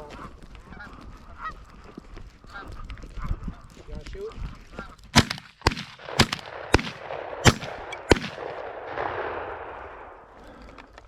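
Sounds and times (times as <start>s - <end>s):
shotgun blasts: 5.1s - 10.6s.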